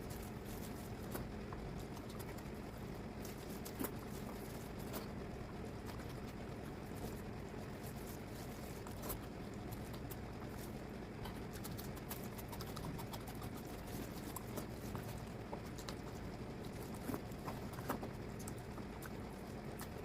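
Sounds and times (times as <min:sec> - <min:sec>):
person chewing: 0:07.8 - 0:20.0.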